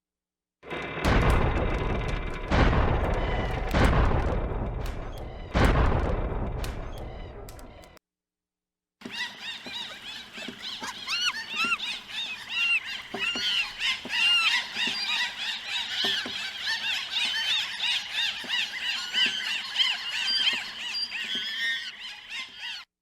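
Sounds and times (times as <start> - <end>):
chorus of high squealing calls: 9.0 - 22.9.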